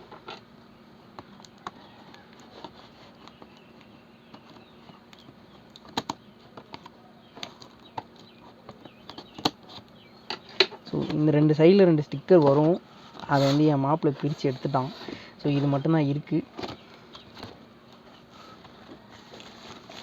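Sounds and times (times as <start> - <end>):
cardboard packaging clicks and rustles: 14.2 - 20.0.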